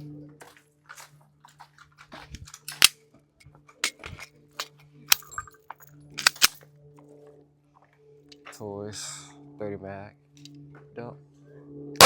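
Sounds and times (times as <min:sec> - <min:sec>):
metallic clicks of handling guns: 0:02.4 - 0:03.0, 0:03.7 - 0:06.7.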